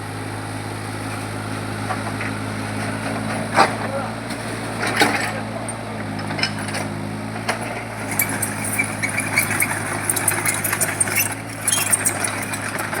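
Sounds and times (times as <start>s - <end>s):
diesel engine idling: 0.0s - 13.0s
metallic clinks and knocks: 8.1s - 13.0s.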